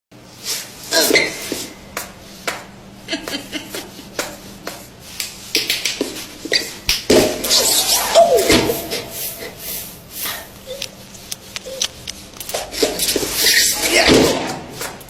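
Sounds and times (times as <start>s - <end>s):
vocal noises: 7.3s - 14.3s
downward sliding vocal sound: 7.4s - 10.3s.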